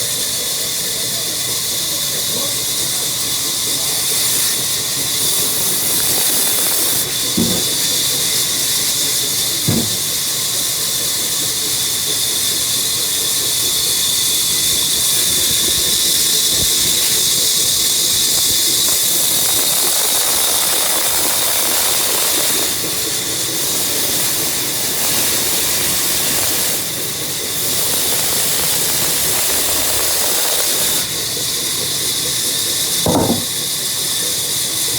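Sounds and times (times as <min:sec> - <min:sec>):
woodworking machine cutting wood: 0:03.7 - 0:10.9, 0:29.0 - 0:34.5
short knocks: 0:07.2 - 0:08.7, 0:09.6 - 0:10.4, 0:33.1 - 0:33.7.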